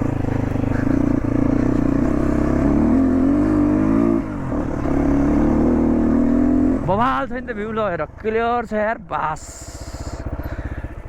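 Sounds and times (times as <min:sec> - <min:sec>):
motorcycle engine revving: 0:00.0 - 0:08.2, 0:09.4 - 0:11.0.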